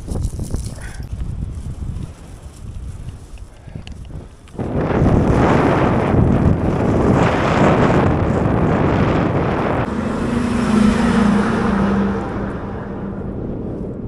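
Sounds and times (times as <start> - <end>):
wind buffeting microphone: 0.0 - 14.0
passing truck engine hum: 7.1 - 14.0.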